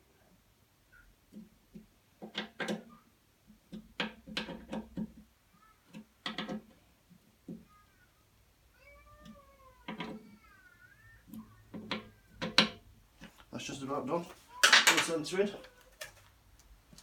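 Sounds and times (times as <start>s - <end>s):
tools and metal parts clinking: 14.6s - 16.2s.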